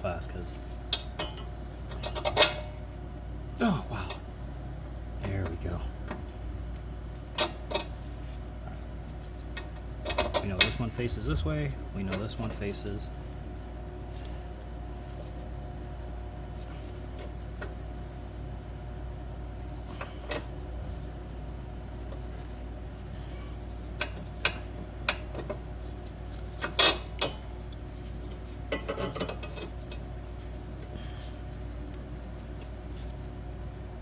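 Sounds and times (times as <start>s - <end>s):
electric fan humming: 0.0s - 34.0s.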